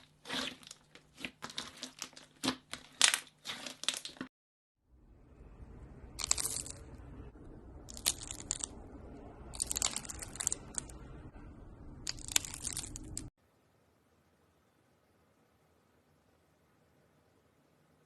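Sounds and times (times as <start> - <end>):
crunchy slime crackling: 0.0 - 4.3, 7.9 - 8.7, 9.5 - 10.9, 12.1 - 13.3
slime squishing: 0.0 - 4.3, 7.9 - 8.8, 12.1 - 13.3.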